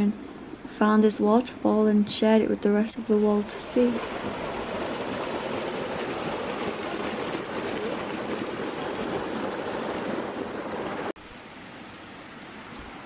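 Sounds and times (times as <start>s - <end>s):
quiet rush of water: 1.6s - 13.0s
stream water flowing: 2.9s - 13.0s.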